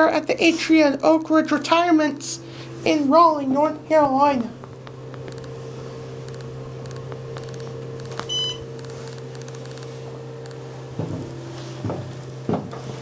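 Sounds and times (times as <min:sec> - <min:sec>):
electrical hum: 0:00.0 - 0:13.0
noise with wavering pitch: 0:03.8 - 0:11.0
short high electronic beep: 0:08.3 - 0:08.6.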